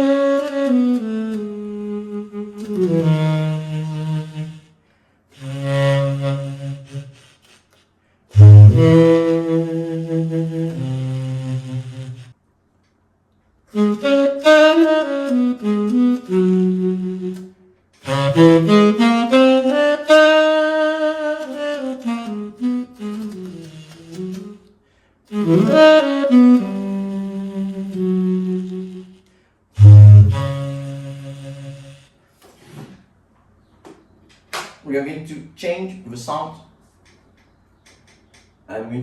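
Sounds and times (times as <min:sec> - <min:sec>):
tenor saxophone melody: 0:00.0 - 0:07.7, 0:08.3 - 0:12.4, 0:13.7 - 0:32.3.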